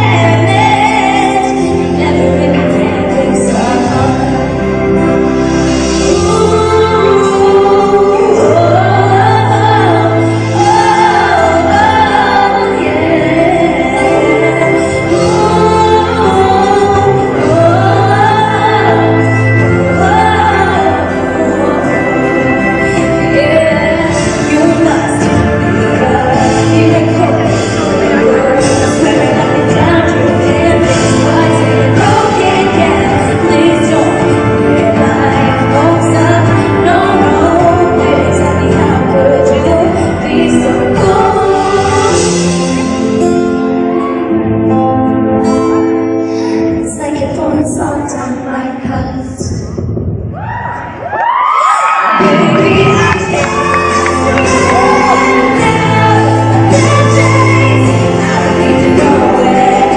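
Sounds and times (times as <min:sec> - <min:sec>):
steady bass: 0:00.0 - 0:46.1, 0:48.9 - 0:51.0, 0:52.1 - 0:59.9
woman singing a ballad: 0:00.0 - 0:49.7, 0:51.4 - 0:59.9
sustained chords: 0:52.2 - 0:59.9.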